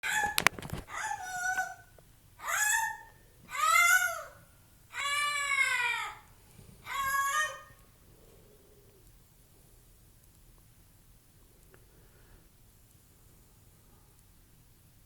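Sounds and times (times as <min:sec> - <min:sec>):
quiet breaths: 0:06.3 - 0:06.9, 0:07.8 - 0:15.0.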